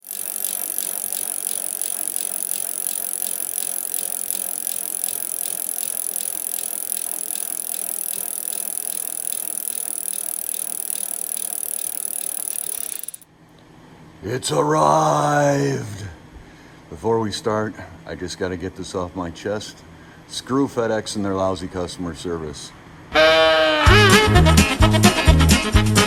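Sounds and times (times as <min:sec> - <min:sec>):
mechanical ticking: 0:00.0 - 0:13.2.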